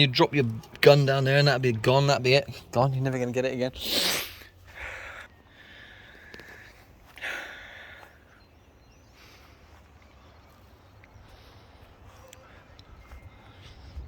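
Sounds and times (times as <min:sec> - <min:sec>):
faint background noise: 0:00.0 - 0:14.0
person sniffling: 0:03.8 - 0:05.2.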